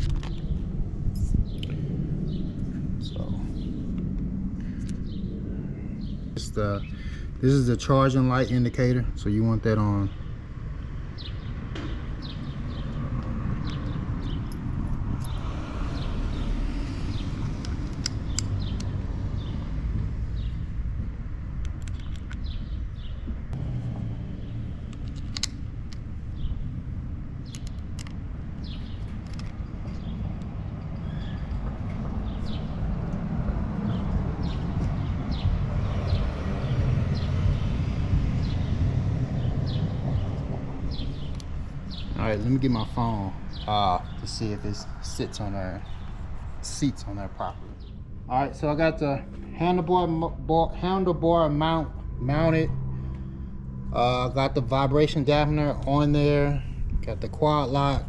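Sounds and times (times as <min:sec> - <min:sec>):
low rumble: 0:00.0 - 0:09.3, 0:22.6 - 0:58.0
small birds chirping: 0:04.6 - 0:20.7, 0:21.8 - 0:23.5, 0:24.3 - 0:33.2, 0:33.8 - 0:51.9
bird chirping: 0:33.8 - 0:53.4.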